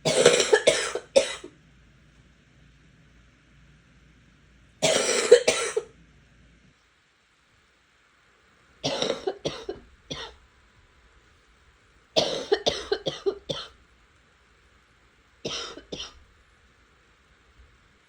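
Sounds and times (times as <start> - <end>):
person coughing: 0.0 - 1.5, 4.8 - 5.9, 8.8 - 10.4, 12.2 - 13.8, 15.5 - 16.2.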